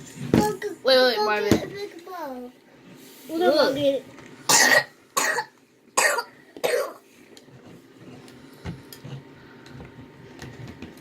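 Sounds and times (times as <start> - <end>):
person coughing: 4.5 - 7.0.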